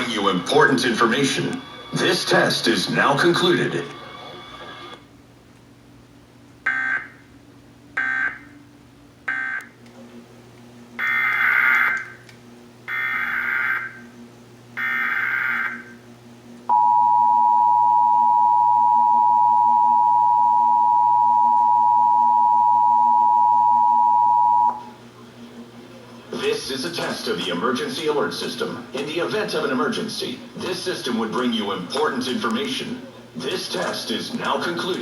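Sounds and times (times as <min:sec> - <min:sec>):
two-tone alert signal: 0:16.7 - 0:24.9.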